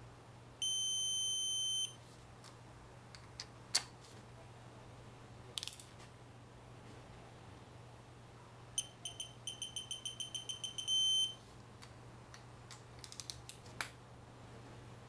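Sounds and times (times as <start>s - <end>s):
electronic beeper beeping: 8.8s - 11.4s.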